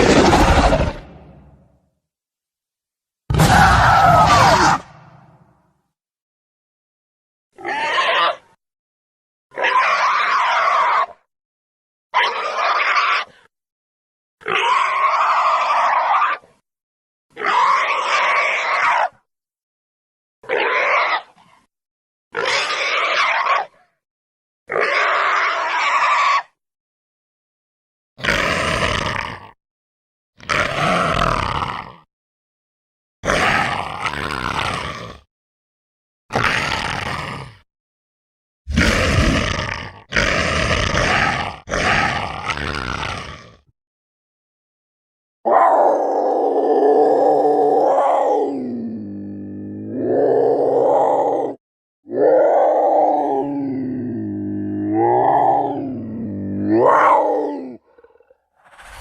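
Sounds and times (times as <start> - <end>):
dinosaur roars: 0.0 - 1.7, 3.3 - 5.5, 28.2 - 29.6, 30.4 - 32.1, 33.2 - 35.3, 36.3 - 37.6, 38.7 - 43.7, 45.4 - 59.0
harsh raspy creature calls: 3.3 - 5.4, 7.6 - 8.6, 9.5 - 11.3, 12.2 - 13.5, 14.4 - 16.6, 17.3 - 19.2, 20.4 - 21.7, 22.4 - 23.8, 24.7 - 26.6, 28.2 - 29.6, 30.4 - 32.1, 33.2 - 35.3, 36.3 - 37.6, 38.7 - 43.7, 45.5 - 59.0.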